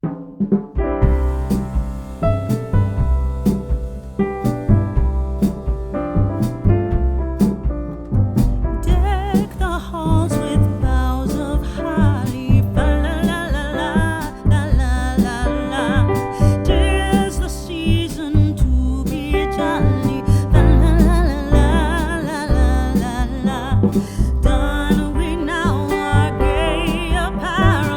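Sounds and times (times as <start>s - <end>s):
keyboard and bass music: 1.0s - 19.1s, 19.7s - 27.9s
person singing: 8.9s - 27.9s.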